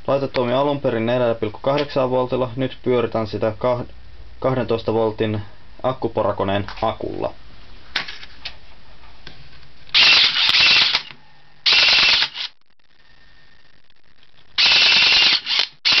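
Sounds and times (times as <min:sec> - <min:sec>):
airsoft pistol motor buzzing: 0:09.9 - 0:12.5, 0:14.6 - 0:16.0.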